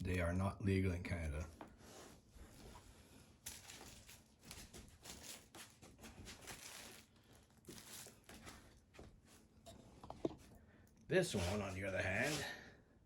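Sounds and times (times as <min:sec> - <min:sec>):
packaging rustling and crinkling: 0:03.4 - 0:09.0.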